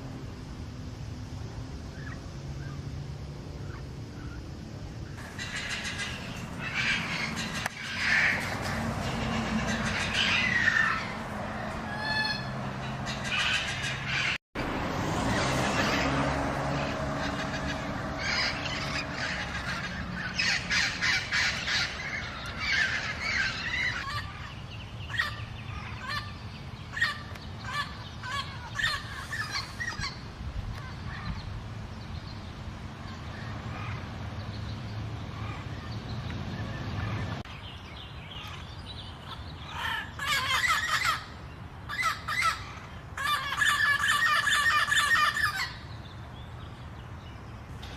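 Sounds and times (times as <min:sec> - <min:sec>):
parrots squawking: 0:05.2 - 0:14.4, 0:15.3 - 0:16.2, 0:16.8 - 0:30.2, 0:39.2 - 0:45.9.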